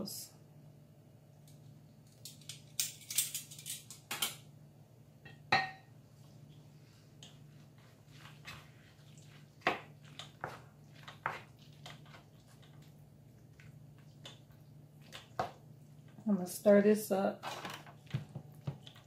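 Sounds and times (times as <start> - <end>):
wet squelches of pasta: 6.2 - 16.3.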